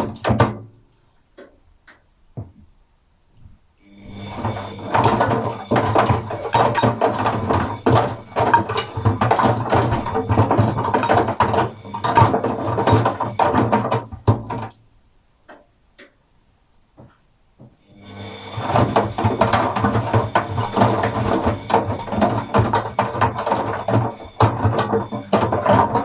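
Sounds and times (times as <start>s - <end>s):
washing machine motor hum: 0.0s - 2.8s, 3.4s - 14.8s, 17.0s - 26.0s
knocks inside drum: 18.6s - 26.0s.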